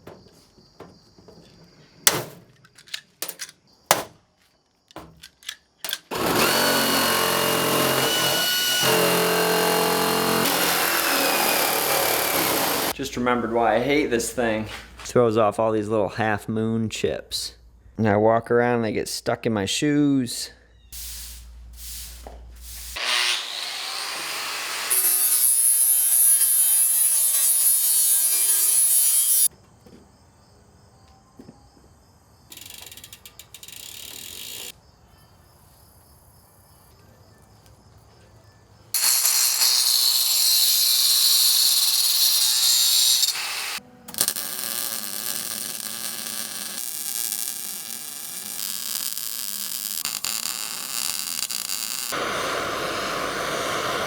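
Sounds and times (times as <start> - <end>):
workshop noise: 0.0 - 15.3
small clicks and handling sounds: 2.5 - 3.6, 4.4 - 6.1
power tool cutting: 6.1 - 13.0, 23.0 - 29.5, 39.0 - 54.0.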